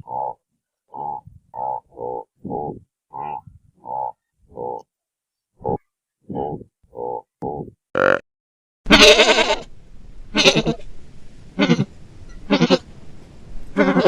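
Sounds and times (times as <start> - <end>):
goat bleating: 8.9 - 9.7, 10.3 - 10.9, 11.6 - 11.9, 12.5 - 12.8, 13.8 - 14.0
faint background hiss: 8.9 - 14.0.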